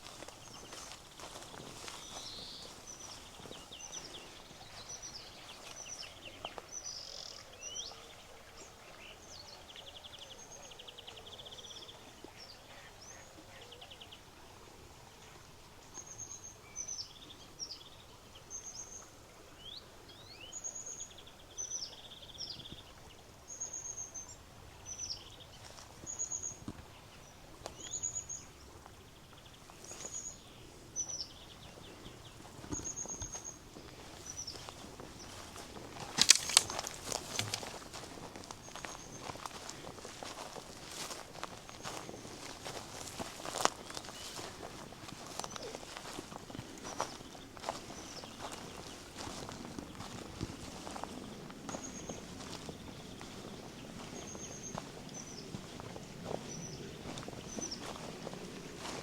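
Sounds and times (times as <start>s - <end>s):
songbirds chirping and trilling: 0.0s - 14.4s, 15.0s - 59.0s.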